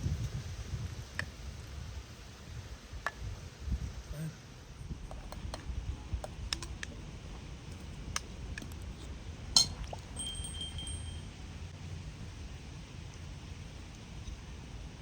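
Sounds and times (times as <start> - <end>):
low steady rumble: 0.0 - 15.0
light clicks and clinks: 9.6 - 11.5.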